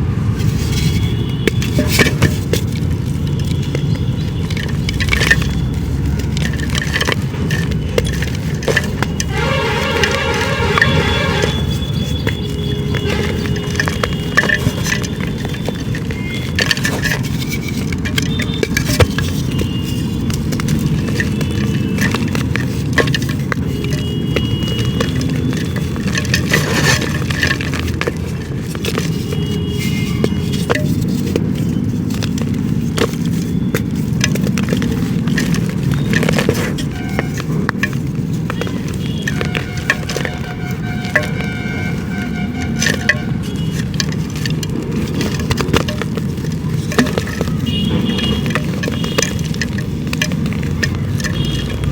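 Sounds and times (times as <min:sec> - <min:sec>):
dried clay crumbling by hand: 0:11.7 - 0:51.9.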